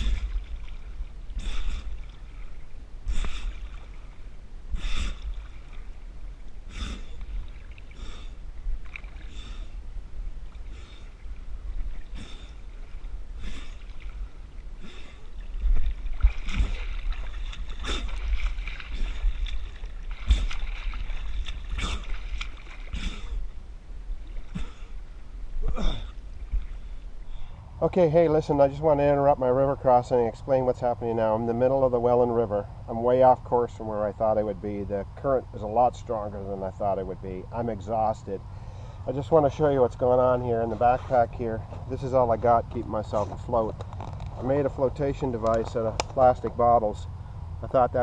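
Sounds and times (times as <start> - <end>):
swimming strokes splashing: 0.0 - 23.6
hard breathing: 1.4 - 2.0, 3.0 - 3.7, 4.7 - 5.4, 6.7 - 7.2, 7.9 - 8.4, 9.2 - 9.8, 10.6 - 11.2, 12.1 - 12.7, 14.8 - 15.4, 38.5 - 39.1.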